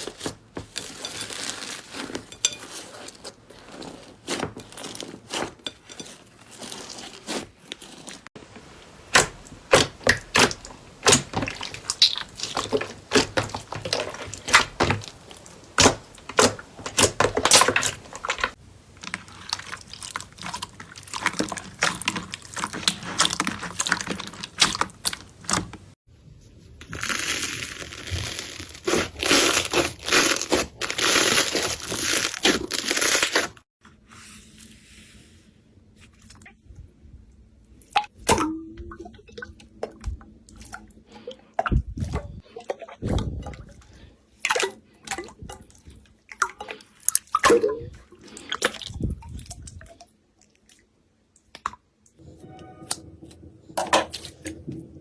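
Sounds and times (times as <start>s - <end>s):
slime crackling: 6.4s - 25.9s, 26.9s - 33.6s.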